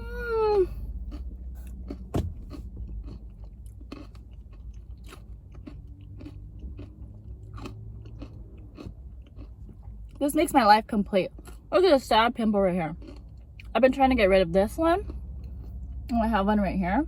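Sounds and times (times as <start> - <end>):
person chewing crunchy food: 0.0 - 10.2, 11.3 - 11.7, 12.9 - 13.7, 15.0 - 16.1.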